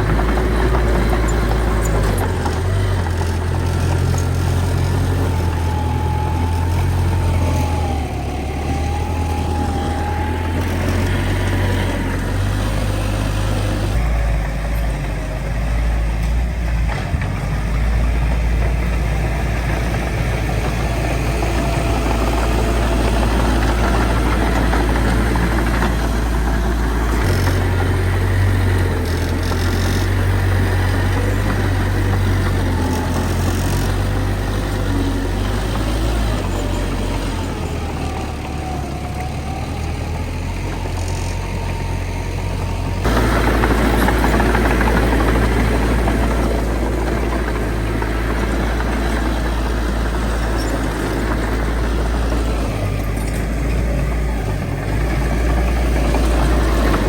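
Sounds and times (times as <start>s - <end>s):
heavy diesel engines running: 0.0s - 57.0s.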